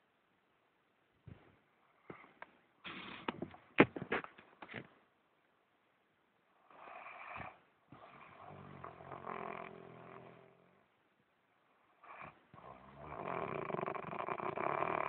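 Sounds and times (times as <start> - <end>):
man snoring: 6.8 - 10.7, 12.0 - 15.0.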